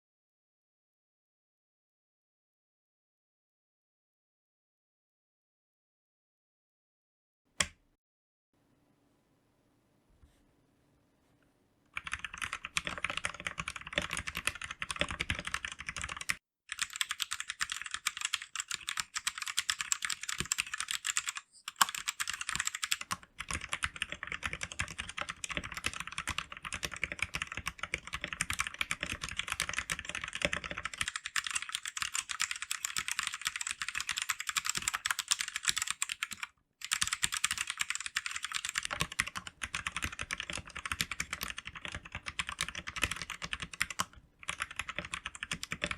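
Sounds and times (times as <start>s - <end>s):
mechanical keyboard typing: 12.0s - 45.9s.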